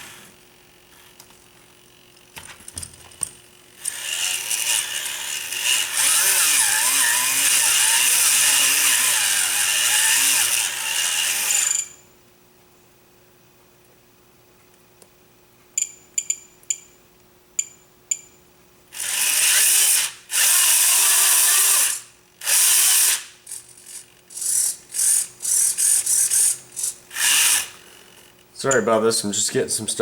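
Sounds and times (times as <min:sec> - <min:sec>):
electric motors whirring: 0:03.8 - 0:12.0, 0:18.9 - 0:28.9.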